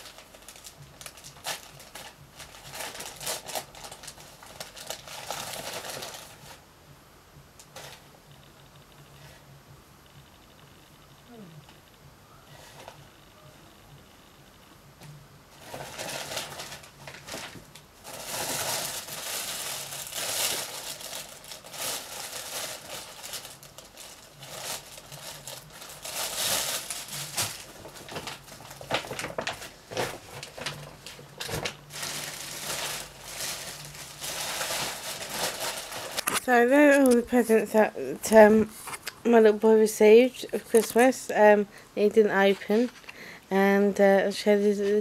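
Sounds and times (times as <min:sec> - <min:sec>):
packaging rustling and crinkling: 0:00.0 - 0:06.6, 0:07.6 - 0:08.0, 0:15.5 - 0:39.4, 0:40.4 - 0:41.4.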